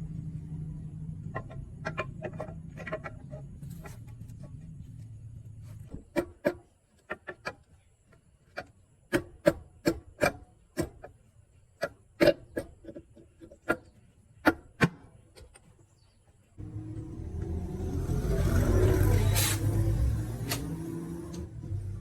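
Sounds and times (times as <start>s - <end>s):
small motorcycle engine running: 16.6s - 22.0s.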